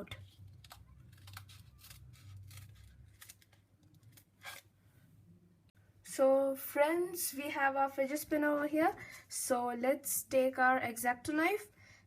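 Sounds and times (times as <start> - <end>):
scissors cutting cardboard: 0.4 - 4.6.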